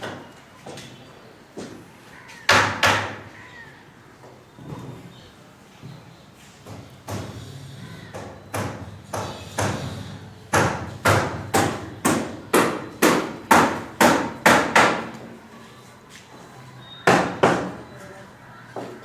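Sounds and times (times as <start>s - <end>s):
hammer blows ringing: 8.1s - 15.2s, 17.0s - 18.1s.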